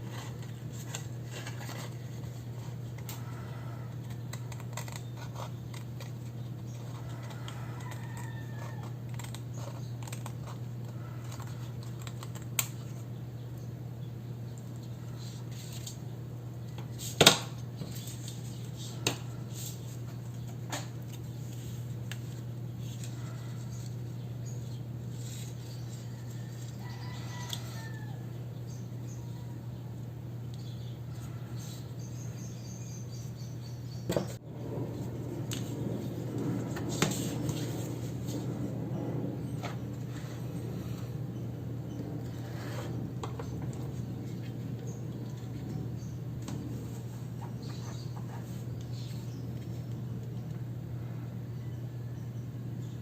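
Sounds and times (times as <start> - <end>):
paper rustling: 0.0 - 13.0, 25.0 - 27.6
steady low hum: 0.0 - 53.0.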